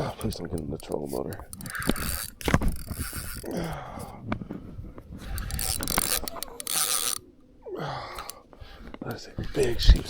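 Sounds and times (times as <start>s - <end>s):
fishing reel clicking and scraping: 0.0s - 3.8s, 5.2s - 7.3s.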